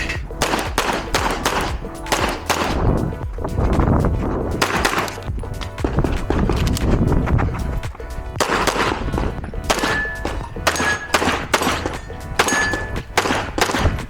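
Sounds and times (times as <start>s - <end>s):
pistol shots with echo: 0.0s - 3.0s, 4.6s - 5.2s, 8.4s - 14.0s
background music: 0.0s - 14.0s.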